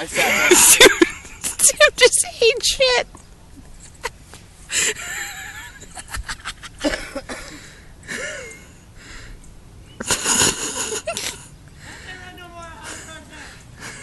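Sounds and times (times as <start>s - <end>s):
people laughing: 0.0s - 1.9s, 3.6s - 8.7s.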